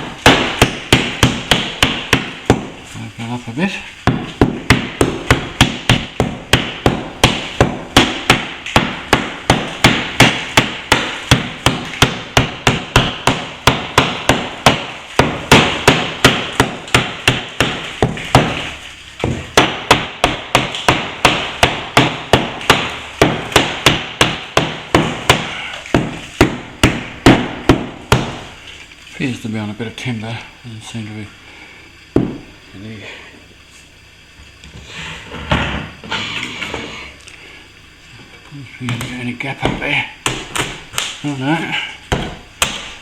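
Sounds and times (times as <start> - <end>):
hammer chipping plaster: 0.0 - 2.7, 4.1 - 28.4.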